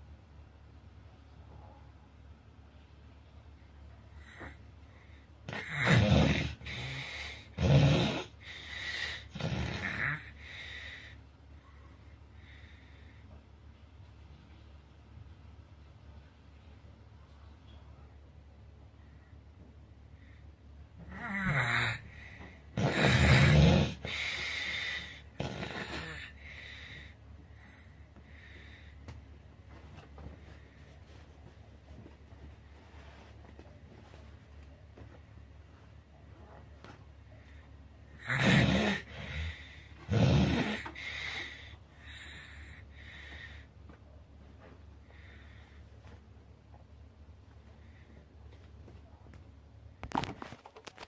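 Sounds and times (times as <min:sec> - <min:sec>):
noisy breaths: 0:04.0 - 0:13.5, 0:18.9 - 0:36.0, 0:36.8 - 0:46.4, 0:47.4 - 0:48.8
person snoring heavily: 0:05.5 - 0:11.1, 0:21.0 - 0:27.0, 0:38.2 - 0:43.5.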